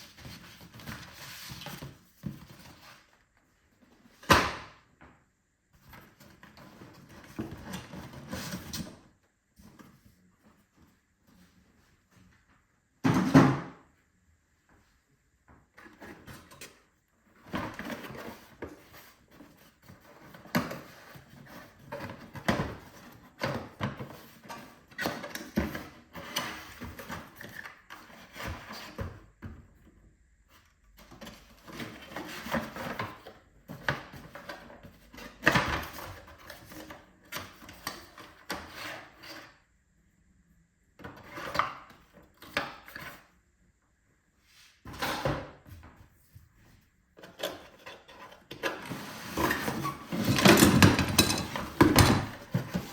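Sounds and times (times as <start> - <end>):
knocks and thuds of parts: 13.0 - 13.8, 50.2 - 52.9.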